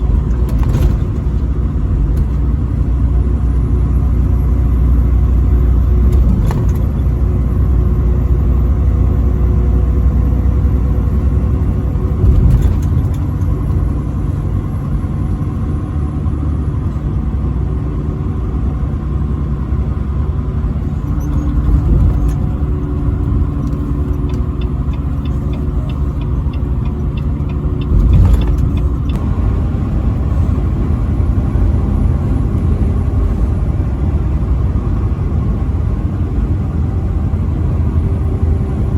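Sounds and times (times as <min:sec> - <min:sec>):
vehicle engine and tyre rumble: 0:00.0 - 0:38.9
loud thumps: 0:20.9 - 0:26.2, 0:27.4 - 0:29.8.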